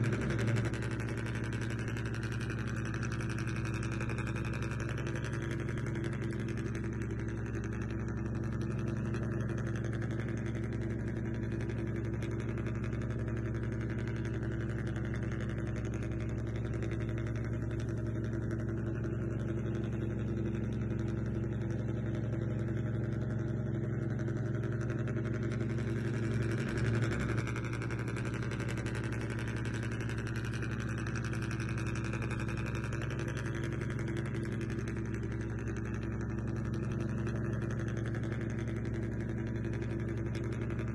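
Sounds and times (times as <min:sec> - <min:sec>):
model engine idling drone: 0:00.0 - 0:40.9.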